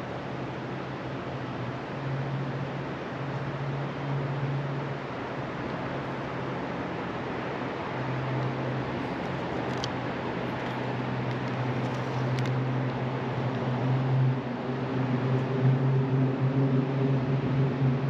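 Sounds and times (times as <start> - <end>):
constant rushing noise: 0.0 - 18.0
low motor hum: 7.9 - 18.0.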